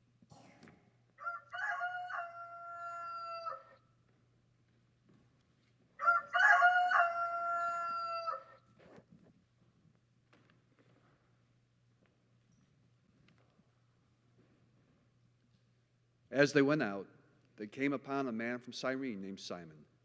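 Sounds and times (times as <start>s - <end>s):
rooster crowing: 1.2s - 3.8s, 6.0s - 8.6s.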